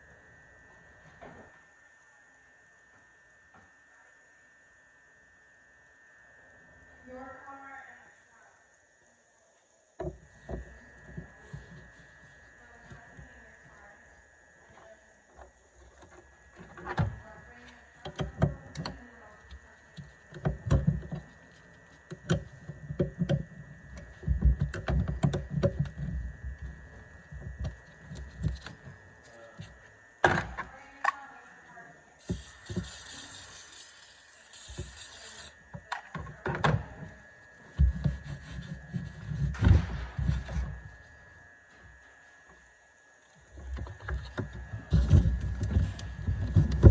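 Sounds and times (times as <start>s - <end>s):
hissing: 32.2s - 35.6s.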